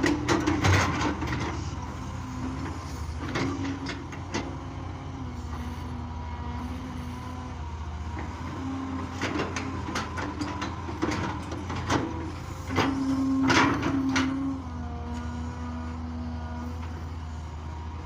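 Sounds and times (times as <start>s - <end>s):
hydraulic whine: 0.0s - 17.5s
excavator diesel engine running: 0.0s - 18.0s.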